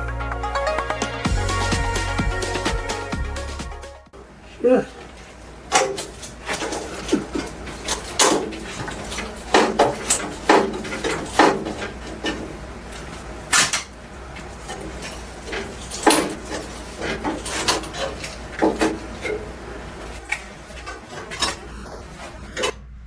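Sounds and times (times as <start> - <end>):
metal clanks and knocks: 5.7 - 12.5.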